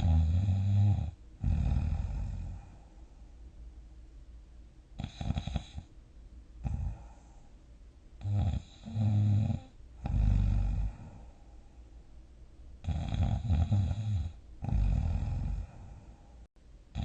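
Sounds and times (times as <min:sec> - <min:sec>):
person snoring: 0:00.0 - 0:02.9, 0:05.0 - 0:05.9, 0:06.6 - 0:07.4, 0:08.2 - 0:11.4, 0:12.8 - 0:16.3.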